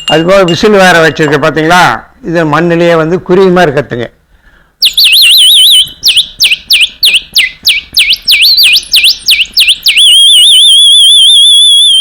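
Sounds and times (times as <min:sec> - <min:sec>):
bird whistle chirping and trilling: 0:04.8 - 0:12.0.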